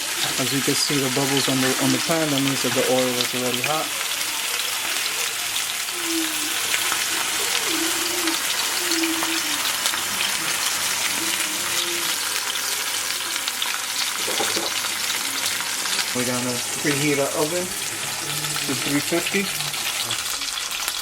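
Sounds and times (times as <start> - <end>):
chicken sizzling in hot oil: 0.0 - 21.0.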